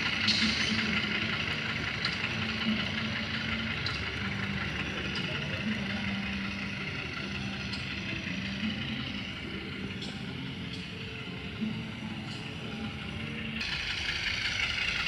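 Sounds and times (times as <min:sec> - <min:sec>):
model locomotive diesel engine hum: 0:00.0 - 0:15.0.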